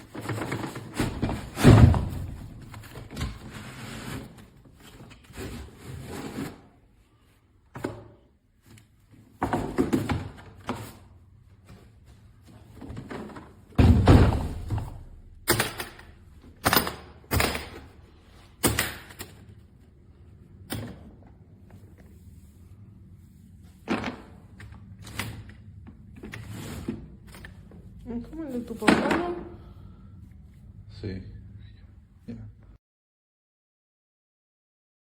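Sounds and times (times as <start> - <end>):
sharp knocks and thunks: 13.8 - 15.8.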